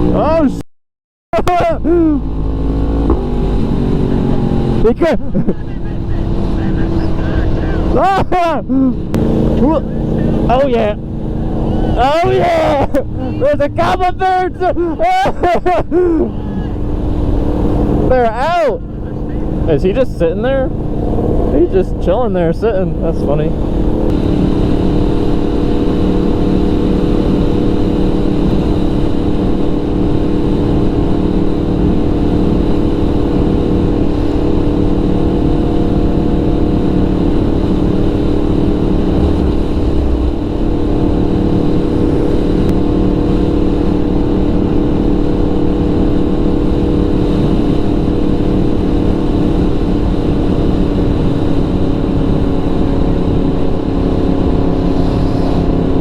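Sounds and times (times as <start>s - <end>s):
motorcycle engine cruising: 1.4s - 56.0s
wind noise: 20.6s - 22.2s, 22.9s - 56.0s.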